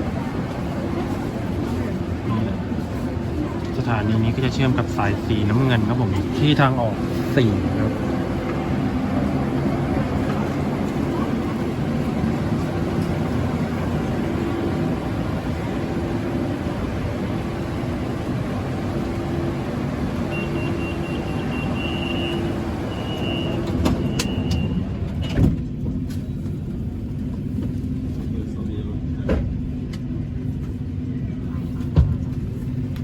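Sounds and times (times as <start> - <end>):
electric train rumbling: 0.0 - 33.0.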